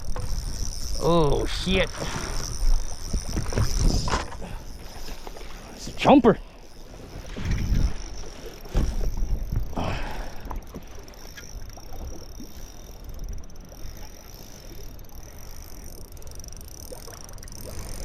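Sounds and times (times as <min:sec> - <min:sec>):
wind buffeting microphone: 0:00.0 - 0:04.8, 0:07.1 - 0:10.0
water slapping against boat hull: 0:08.6 - 0:09.6.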